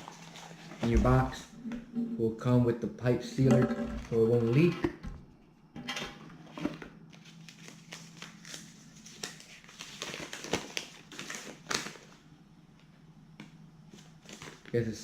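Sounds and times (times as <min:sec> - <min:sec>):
plastic wrap and cardboard crinkling: 0:00.0 - 0:01.4, 0:06.5 - 0:12.2, 0:13.9 - 0:14.9.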